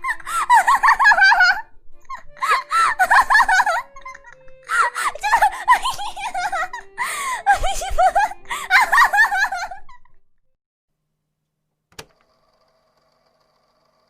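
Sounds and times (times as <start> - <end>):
soft background music: 0.0 - 9.9
high-pitched giggling laughter: 0.0 - 10.2.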